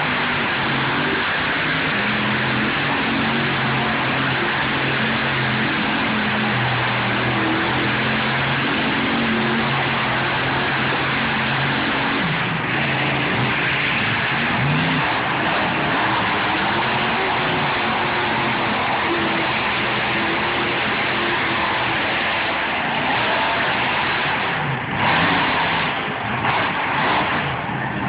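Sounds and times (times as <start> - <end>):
loud continuous din: 0.0 - 28.0
monster truck engines revving: 0.0 - 28.0.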